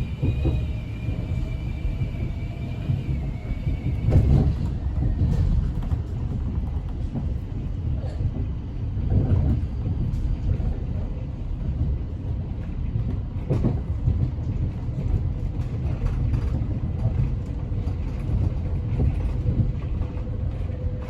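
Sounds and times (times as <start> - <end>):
rushing wind noise: 0.0 - 21.0
train rumble inside carriage: 0.0 - 21.0.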